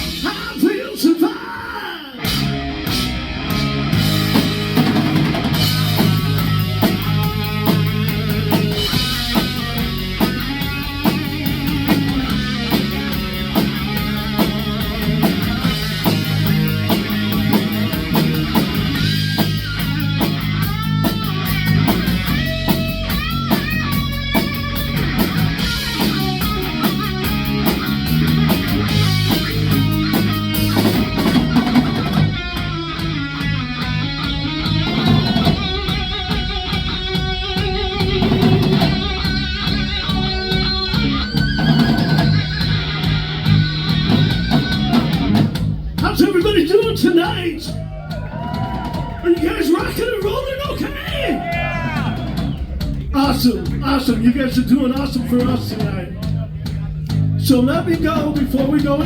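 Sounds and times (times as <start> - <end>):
bass guitar: 0.0 - 0.8, 2.1 - 59.0
drum kit: 0.0 - 59.0
lead electric guitar with pitch bends: 2.2 - 46.1.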